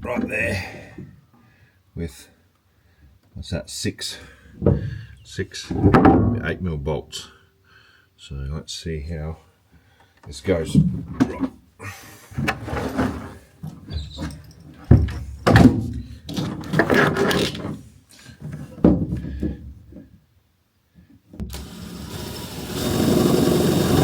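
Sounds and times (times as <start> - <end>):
power drill running: 21.5 - 24.0.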